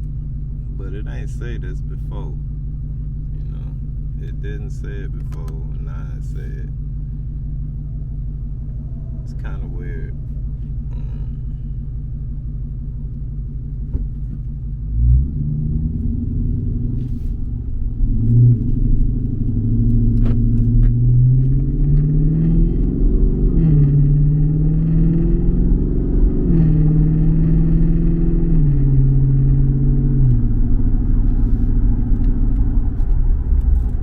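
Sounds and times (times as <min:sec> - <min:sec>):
car engine accelerating: 0:00.0 - 0:34.0.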